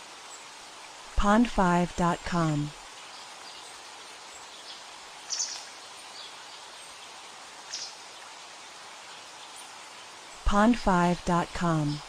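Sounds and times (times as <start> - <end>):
river flowing: 0.0 - 12.0
birds chirping: 3.2 - 7.1, 7.7 - 8.0.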